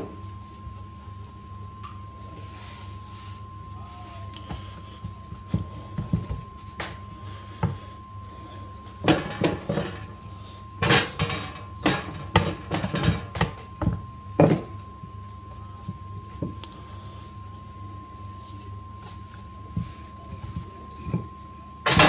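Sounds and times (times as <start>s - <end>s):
kitchenware knocking and clinking: 10.8s - 14.6s.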